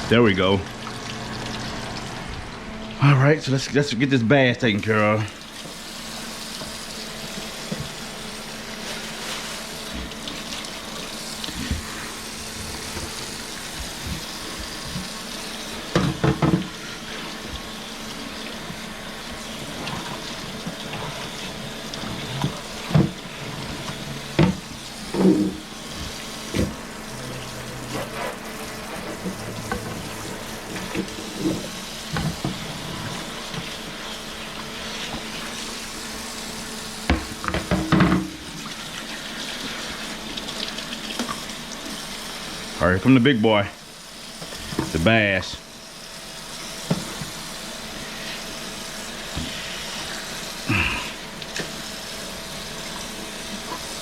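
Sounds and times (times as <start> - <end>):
tap running into sink: 9.9 - 15.2, 15.8 - 16.8, 21.9 - 26.9, 28.9 - 33.8, 37.0 - 39.1.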